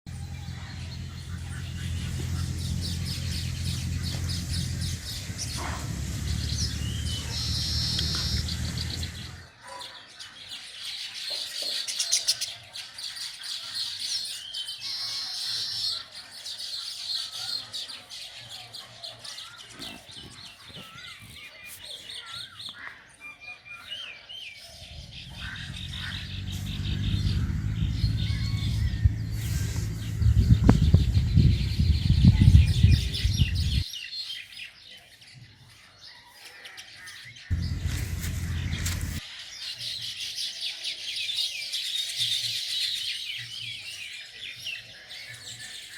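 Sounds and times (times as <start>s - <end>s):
low hum: 0.1s - 9.4s, 25.0s - 33.8s, 37.5s - 39.2s
birds chirping: 0.1s - 45.9s.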